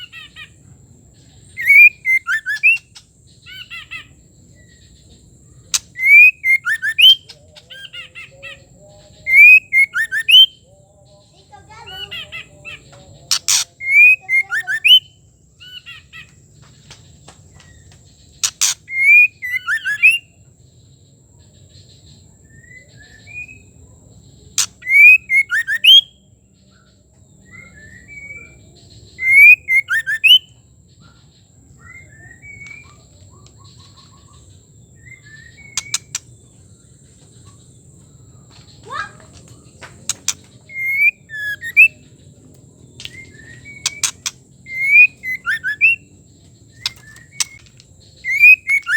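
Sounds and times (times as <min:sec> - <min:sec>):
bird whistling song: 0:01.2 - 0:10.7, 0:11.6 - 0:20.5, 0:22.4 - 0:23.8, 0:24.5 - 0:48.9
bird clicking notes: 0:40.1 - 0:41.9, 0:43.0 - 0:46.0, 0:46.8 - 0:48.9.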